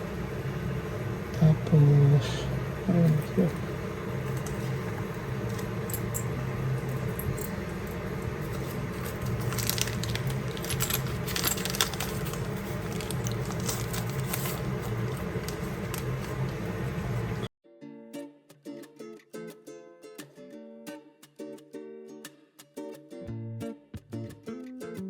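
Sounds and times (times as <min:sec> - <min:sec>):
steady low hum: 0:00.0 - 0:17.5
plucked-string music: 0:17.6 - 0:25.0.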